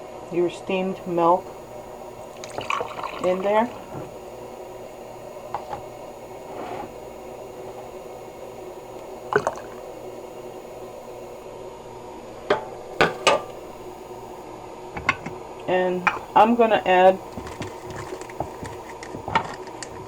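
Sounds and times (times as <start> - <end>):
low steady hum: 0.0 - 20.0
kitchenware clinking: 2.4 - 4.2, 12.5 - 13.9, 16.0 - 19.6.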